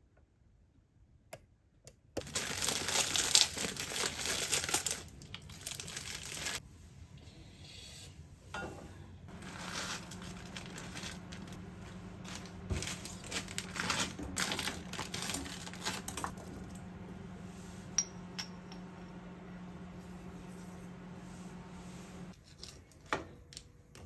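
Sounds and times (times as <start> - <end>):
paper bags crinkling: 2.2 - 6.6, 9.3 - 17.0.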